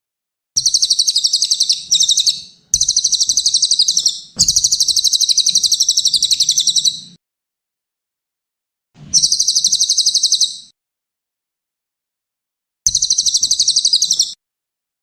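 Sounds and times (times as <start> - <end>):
songbird chattering song: 0.6 - 7.2, 9.2 - 10.7, 12.9 - 14.4.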